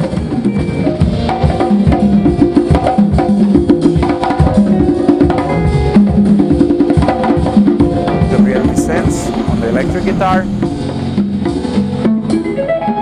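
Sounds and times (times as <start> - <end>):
band music: 8.3 - 10.8
low bass notes: 8.3 - 10.9.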